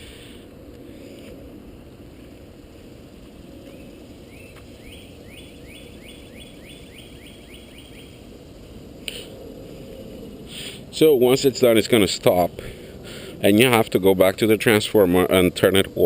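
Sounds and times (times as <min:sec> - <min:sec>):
low background rumble: 0:00.0 - 0:16.0
bird chirping: 0:03.6 - 0:08.5.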